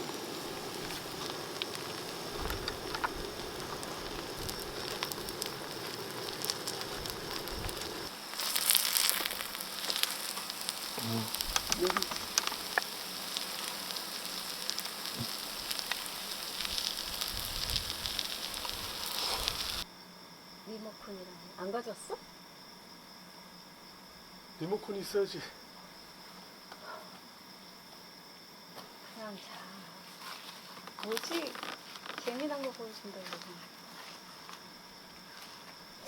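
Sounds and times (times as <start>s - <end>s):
food sizzling in a hot pan: 0.0s - 19.9s.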